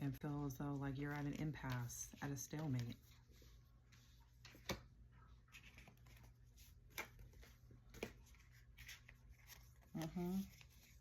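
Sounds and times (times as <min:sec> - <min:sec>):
tarot cards clicking and rustling: 0:05.5 - 0:11.0.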